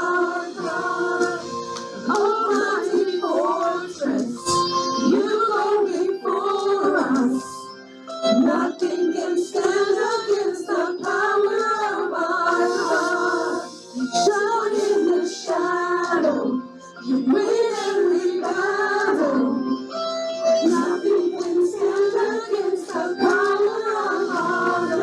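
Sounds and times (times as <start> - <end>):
person singing: 20.4 - 25.0.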